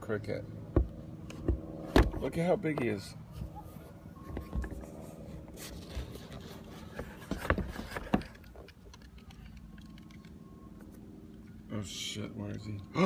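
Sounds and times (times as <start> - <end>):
steady low hum: 0.0 - 13.0
scrapes and knocks on plastic: 5.8 - 8.4.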